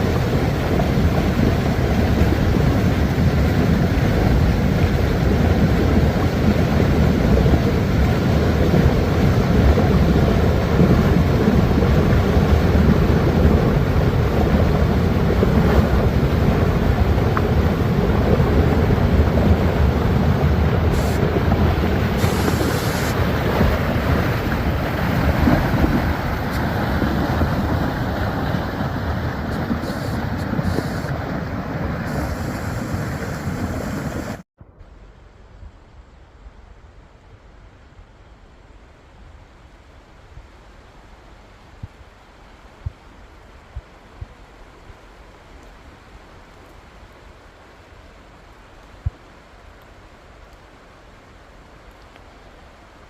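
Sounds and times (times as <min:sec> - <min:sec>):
floodwater rushing: 0:00.0 - 0:34.4.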